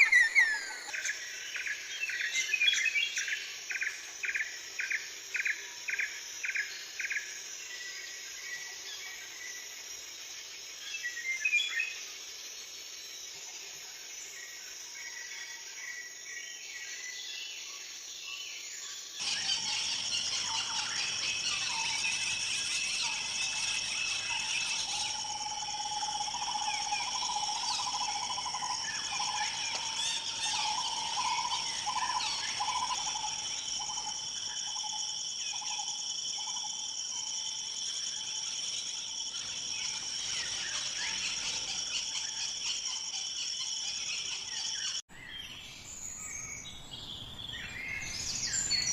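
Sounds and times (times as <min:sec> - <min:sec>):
birds chirping: 0:00.0 - 0:03.2, 0:19.2 - 0:34.5, 0:39.0 - 0:48.9
insects droning: 0:00.0 - 0:48.9.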